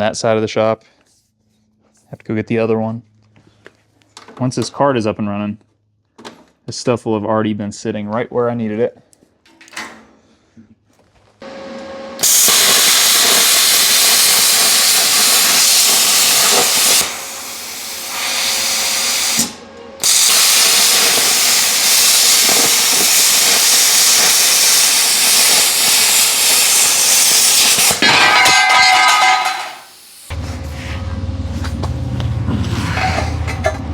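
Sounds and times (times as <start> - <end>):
plasma cutter hissing: 12.2 - 28.0, 29.2 - 30.4.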